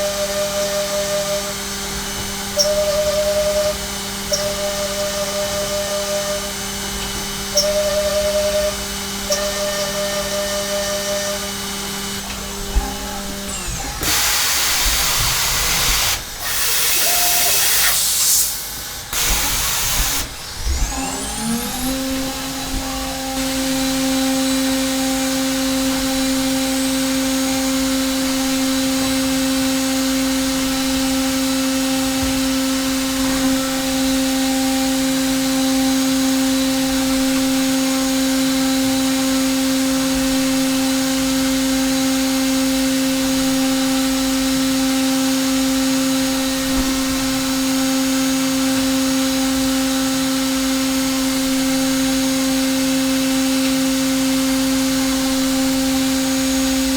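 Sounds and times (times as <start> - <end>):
milling machine spindle whine: 0.0 - 56.9.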